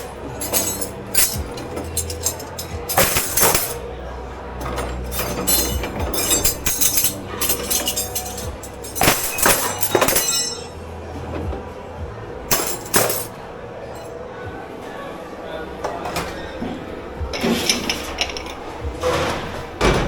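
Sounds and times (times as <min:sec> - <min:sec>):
dishes and cutlery clattering: 0:00.0 - 0:11.5, 0:12.5 - 0:14.1, 0:17.3 - 0:20.0
low machine hum: 0:00.0 - 0:20.0
music: 0:00.0 - 0:20.0.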